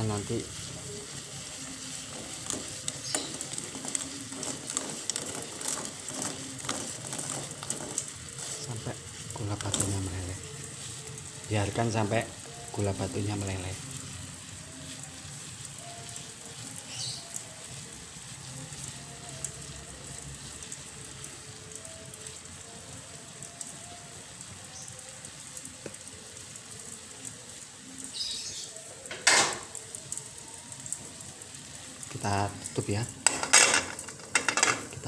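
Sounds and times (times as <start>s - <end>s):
pan hissing on stove: 0.0s - 35.0s
clank against pan: 29.1s - 29.7s.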